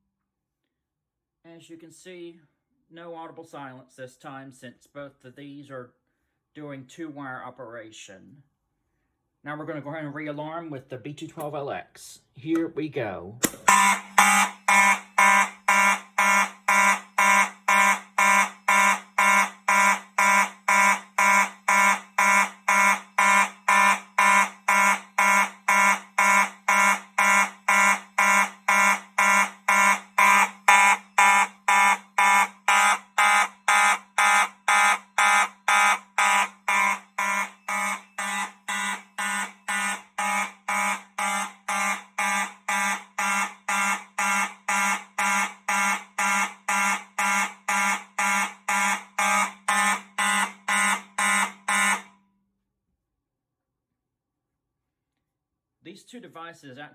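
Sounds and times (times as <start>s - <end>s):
fire alarm horns blasting: 13.7s - 52.2s.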